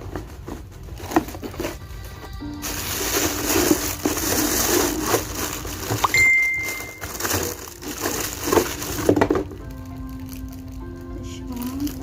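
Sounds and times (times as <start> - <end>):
plastic packaging crinkling: 0.0 - 12.0
brief high tone: 6.0 - 7.2.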